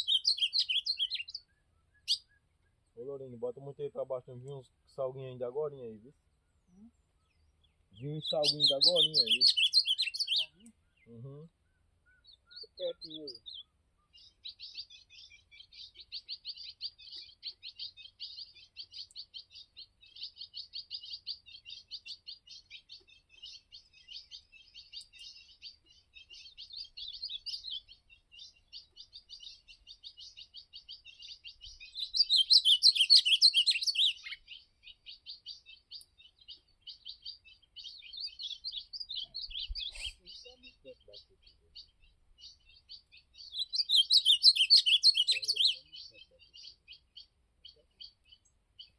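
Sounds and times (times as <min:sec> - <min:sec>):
songbirds twittering and chirping: 0:00.0 - 0:48.9
warbled bird song: 0:00.0 - 0:48.9.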